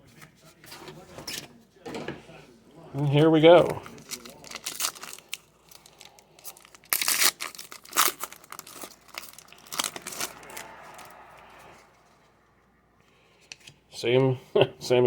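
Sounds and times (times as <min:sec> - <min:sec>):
wrapper crinkling and tearing: 0:03.6 - 0:11.1.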